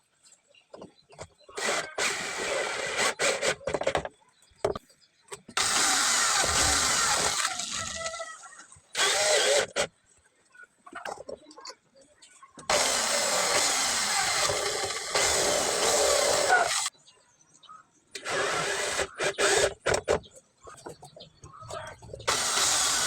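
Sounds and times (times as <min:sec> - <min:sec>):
power drill running: 0:01.6 - 0:03.6, 0:05.6 - 0:09.9, 0:12.7 - 0:16.9, 0:18.2 - 0:20.0, 0:22.3 - 0:23.0.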